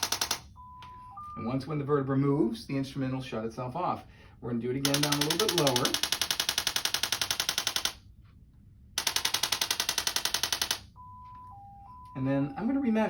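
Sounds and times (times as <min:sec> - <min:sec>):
handheld probe tapping rapidly: 0:04.8 - 0:08.0, 0:09.0 - 0:10.8.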